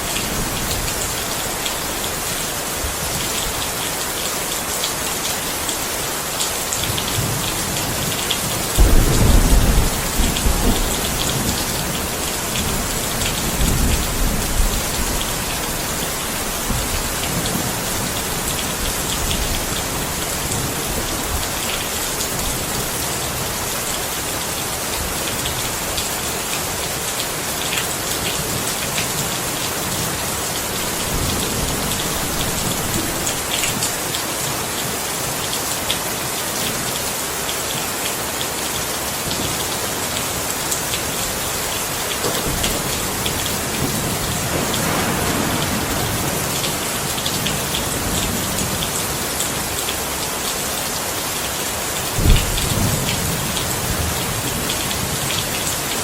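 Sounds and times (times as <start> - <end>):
steady rain: 0.0 - 56.0
low thunder rumbles: 7.2 - 22.8, 29.9 - 34.0, 42.4 - 49.2, 52.2 - 55.3
sharp thunderclap: 8.8 - 15.8, 42.3 - 48.8, 52.2 - 54.2.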